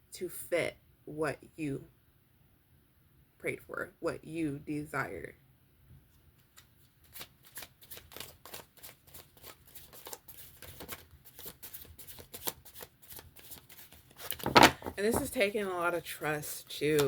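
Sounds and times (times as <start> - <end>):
cards being shuffled: 6.4 - 15.5, 16.7 - 17.0.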